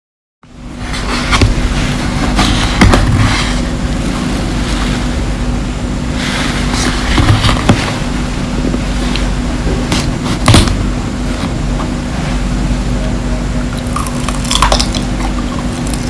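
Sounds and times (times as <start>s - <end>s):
steady low hum: 0.4s - 16.0s
candy crunching between teeth: 13.8s - 16.0s.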